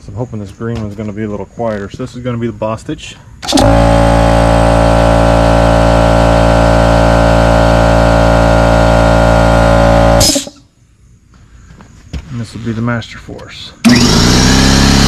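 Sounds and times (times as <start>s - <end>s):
air compressor running: 3.4s - 10.6s, 13.8s - 15.0s.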